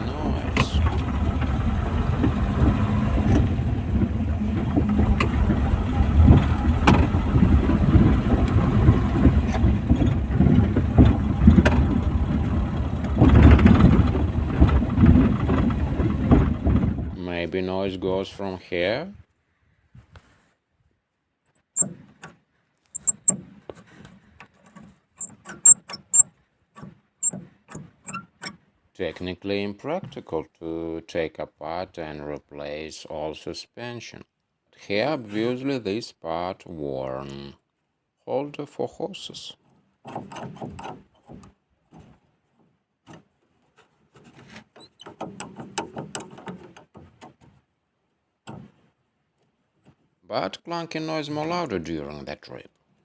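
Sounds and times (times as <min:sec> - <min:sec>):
handling knocks clicks and rubbing: 0:00.0 - 0:17.0, 0:22.9 - 0:23.8, 0:24.4 - 0:28.6
small squeaks: 0:21.5 - 0:21.9, 0:22.9 - 0:23.4, 0:24.7 - 0:28.6, 0:44.3 - 0:45.2.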